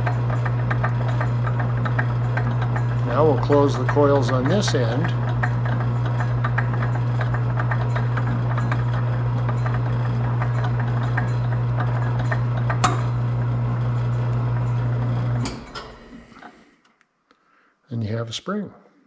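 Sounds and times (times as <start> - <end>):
lathe motor hum: 0.0 - 16.8
sharp click: 12.8 - 13.2.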